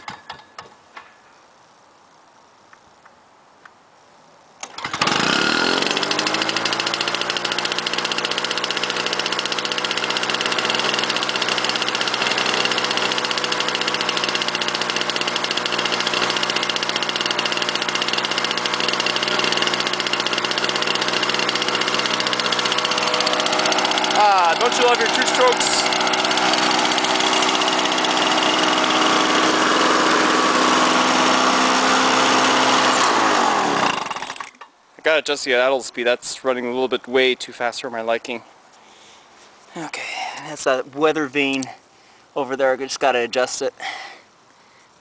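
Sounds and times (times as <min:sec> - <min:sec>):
lawn mower engine buzzing: 0:04.6 - 0:34.5.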